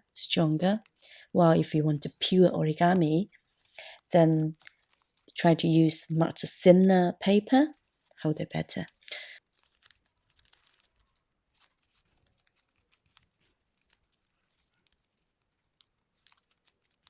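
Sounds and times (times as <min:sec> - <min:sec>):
folded paper rustling: 0:04.6 - 0:05.4, 0:09.0 - 0:17.0.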